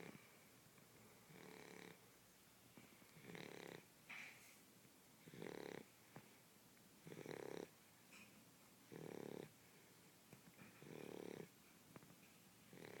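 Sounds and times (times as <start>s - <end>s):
puppy snoring faintly: 0.0s - 0.3s, 0.9s - 2.1s, 3.0s - 3.9s, 5.2s - 6.0s, 7.0s - 7.8s, 8.9s - 9.6s, 10.6s - 11.6s, 12.7s - 13.0s.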